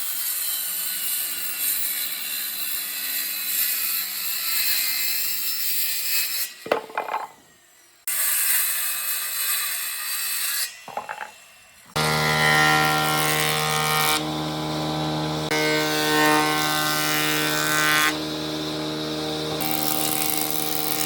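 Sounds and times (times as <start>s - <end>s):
knocks: 6.7s - 7.4s, 10.9s - 11.3s
hissy sawing: 11.9s - 21.0s
power tool motor humming and whining: 11.9s - 21.0s.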